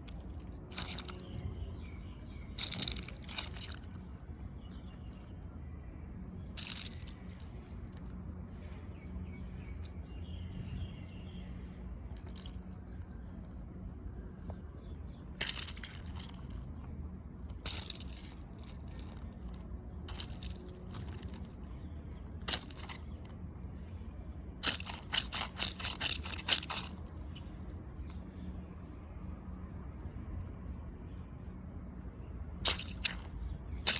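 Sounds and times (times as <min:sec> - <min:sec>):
squeeze toy crunching: 0:00.0 - 0:01.8, 0:02.5 - 0:04.2, 0:06.5 - 0:08.0, 0:15.4 - 0:16.7, 0:17.5 - 0:21.7, 0:22.4 - 0:23.3, 0:24.6 - 0:28.1, 0:32.6 - 0:33.9.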